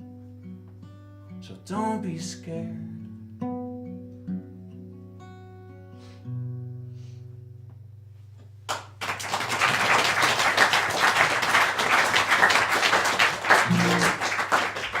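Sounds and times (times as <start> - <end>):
audience applauding: 8.7 - 15.0
acoustic guitar chord: 13.6 - 14.5.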